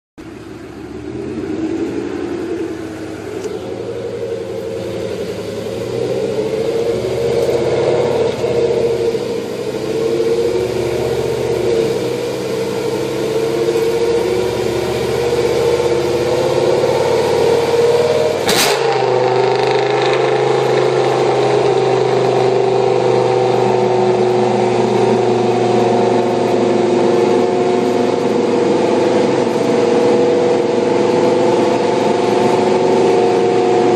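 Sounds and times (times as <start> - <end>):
car engine running: 0.2 - 33.9
sharp crack: 18.4 - 21.2.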